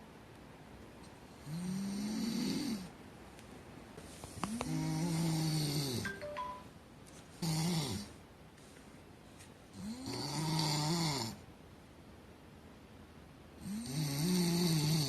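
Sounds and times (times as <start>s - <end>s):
loud snoring: 1.4s - 2.9s, 4.6s - 6.0s, 7.4s - 8.1s, 9.8s - 11.4s, 13.6s - 15.0s.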